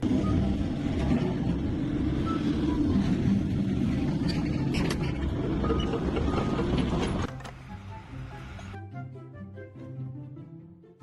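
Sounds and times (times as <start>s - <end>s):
heavy engine running: 0.0s - 8.8s.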